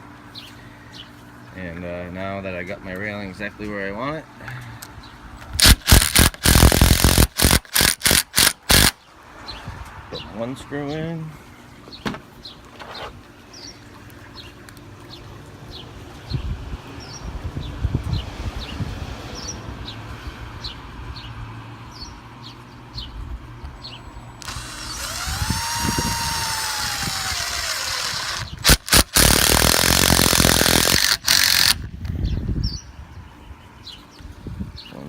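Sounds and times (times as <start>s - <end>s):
power drill driving a screw: 5.6s - 9.0s, 24.4s - 31.9s.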